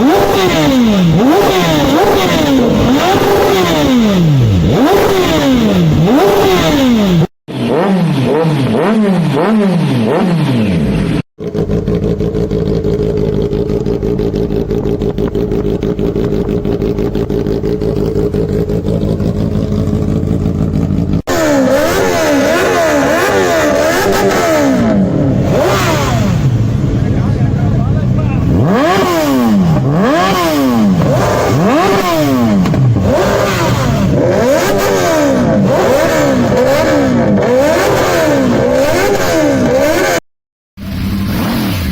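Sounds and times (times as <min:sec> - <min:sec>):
motorcycle engines revving: 0:00.0 - 0:40.2
motorcycle engine idling: 0:11.4 - 0:21.8, 0:22.8 - 0:34.2.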